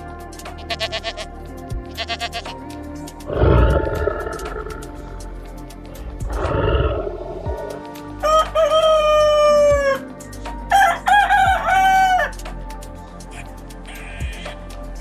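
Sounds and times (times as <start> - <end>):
background music with steady beat: 0.0 - 15.0
rooster crowing: 8.2 - 10.1, 10.7 - 12.4.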